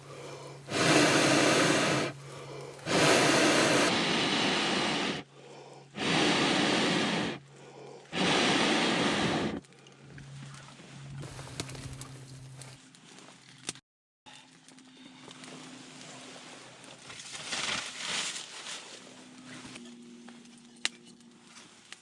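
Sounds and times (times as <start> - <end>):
person blowing out breaths: 0.0 - 9.6.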